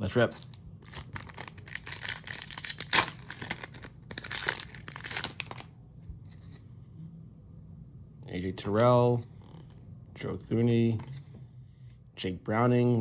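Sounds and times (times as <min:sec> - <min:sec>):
card wrapper ripped and crinkled: 0:00.2 - 0:05.7.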